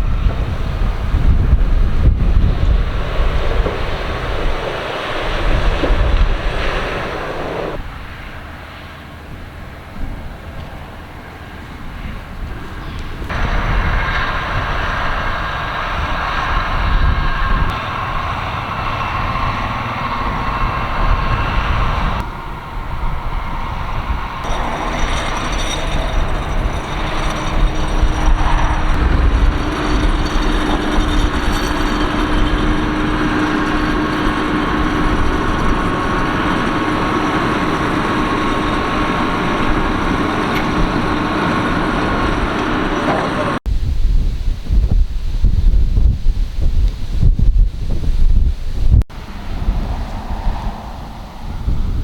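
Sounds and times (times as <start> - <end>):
machinery rumble and clatter: 0.0 - 52.0
steady mechanical whine: 0.0 - 52.0.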